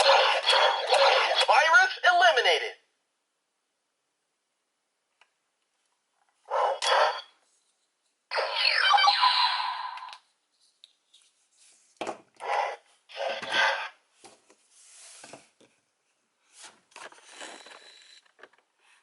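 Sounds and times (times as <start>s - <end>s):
toy electronic sound effect: 0.0s - 1.7s, 8.3s - 10.2s.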